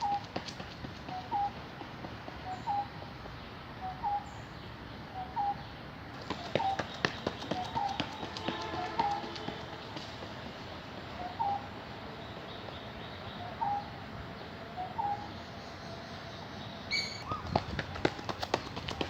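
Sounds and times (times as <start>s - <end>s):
steady background hiss: 9.5s - 17.4s.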